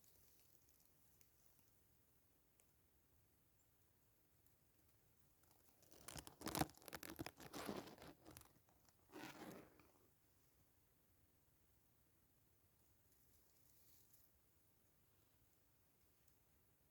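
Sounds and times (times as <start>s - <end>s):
rustling and crunching: 5.5s - 10.0s.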